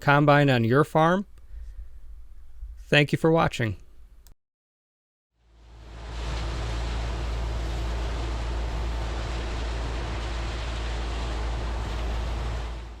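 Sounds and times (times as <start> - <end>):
combine harvester running: 5.5 - 13.0.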